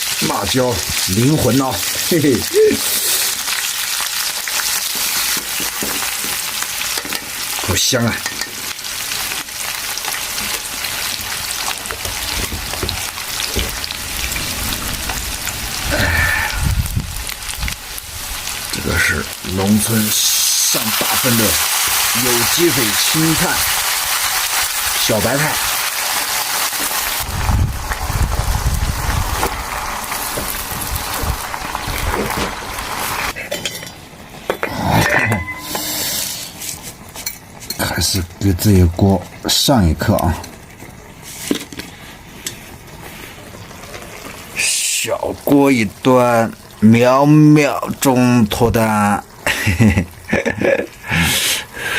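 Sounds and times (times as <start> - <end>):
food sizzling in hot oil: 0.0 - 34.3, 35.0 - 38.0, 38.7 - 51.9
utensil clinking against pot: 33.4 - 36.0.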